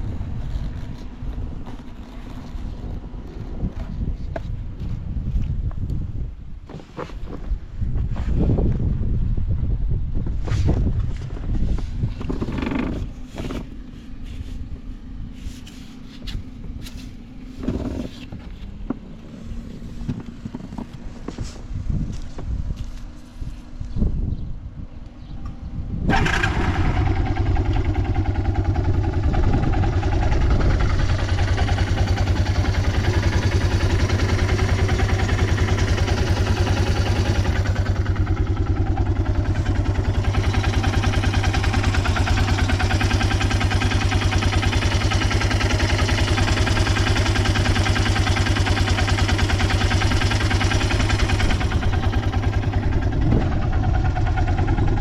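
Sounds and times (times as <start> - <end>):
engine starting and idling: 26.0 - 55.0.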